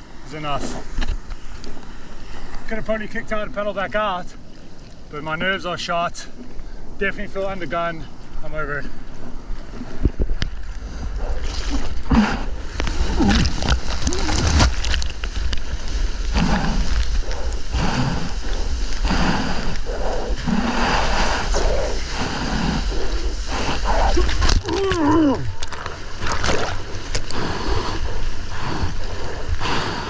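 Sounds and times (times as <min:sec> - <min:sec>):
low rumble of water: 0:00.0 - 0:30.0
water splashing and sloshing: 0:00.0 - 0:30.0
wind on microphone: 0:09.2 - 0:30.0.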